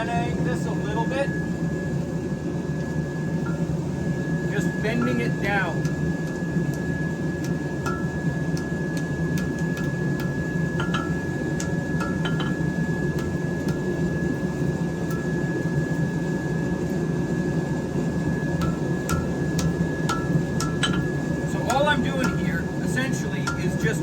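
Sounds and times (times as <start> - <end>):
steady low rumble: 0.0 - 24.0
hammer tapping on steel blade: 7.4 - 12.6, 18.6 - 22.6, 23.3 - 24.0.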